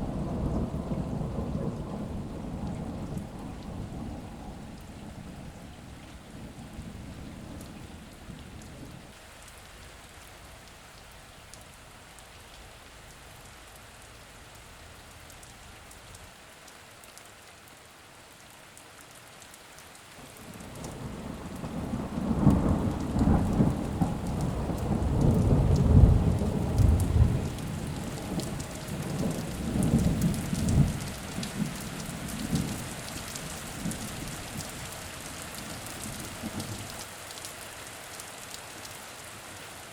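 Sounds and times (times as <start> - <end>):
thunder rumbling: 0.0 - 9.1, 20.5 - 36.9
steady rain falling: 0.0 - 39.9.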